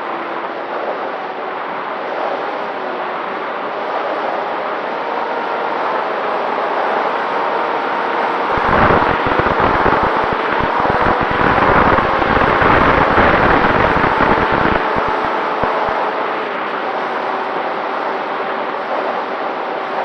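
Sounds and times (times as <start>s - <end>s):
steady hiss: 8.5s - 16.0s
wind buffeting microphone: 8.5s - 16.0s.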